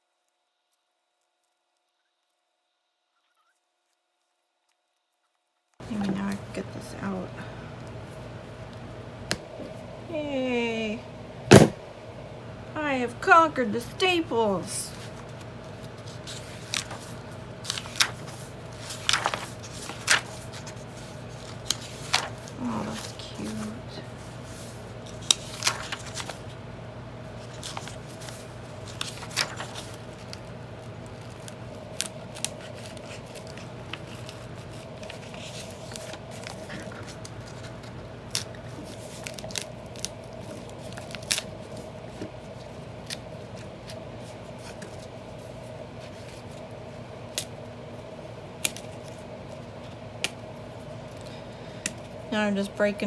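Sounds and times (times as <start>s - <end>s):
steady low hum: 5.8s - 53.0s
old book paper and glue cracking: 14.9s - 23.7s, 24.4s - 26.6s, 27.2s - 45.4s, 48.5s - 52.2s.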